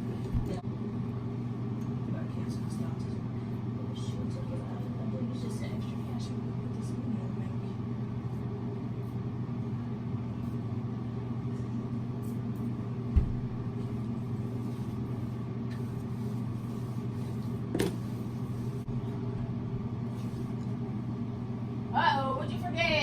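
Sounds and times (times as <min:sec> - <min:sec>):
steady low hum: 0:00.0 - 0:23.0
dull thump: 0:13.2 - 0:13.5.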